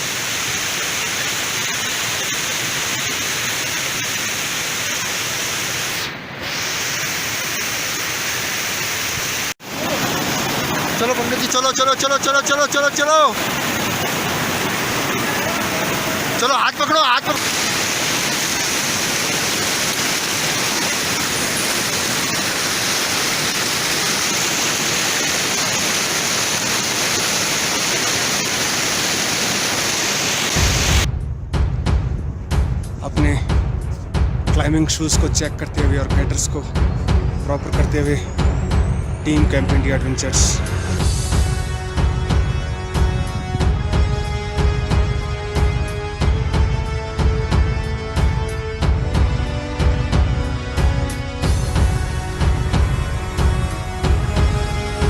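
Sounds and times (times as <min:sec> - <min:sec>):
fast-flowing stream rushing: 0:00.0 - 0:31.1.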